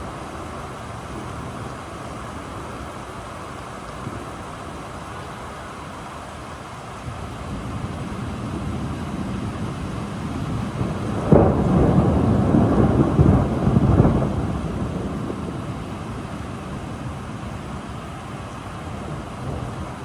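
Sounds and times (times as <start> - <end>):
steady rain: 0.0 - 20.0
thunder rumbling and clapping: 7.3 - 20.0.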